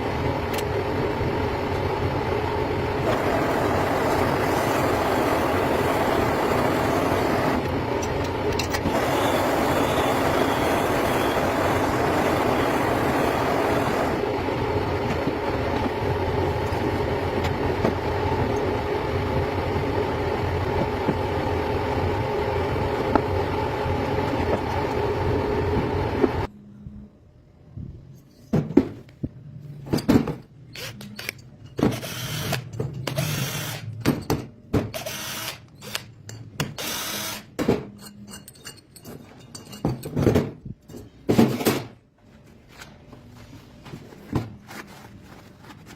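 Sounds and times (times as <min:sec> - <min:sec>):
mechanical running noise: 0:02.5 - 0:26.5.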